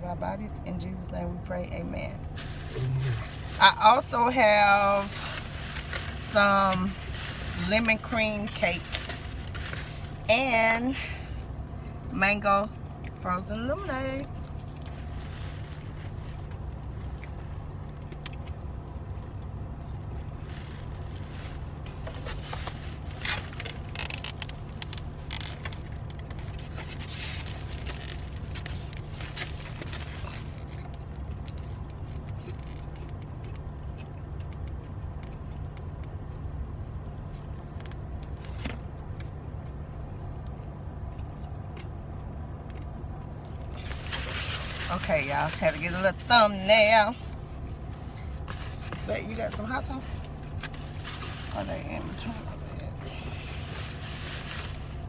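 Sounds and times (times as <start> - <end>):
car engine hum inside cabin: 0.0 - 55.0
rustling and scraping clicks: 4.7 - 10.3, 20.3 - 36.2, 42.6 - 46.4, 47.2 - 52.4.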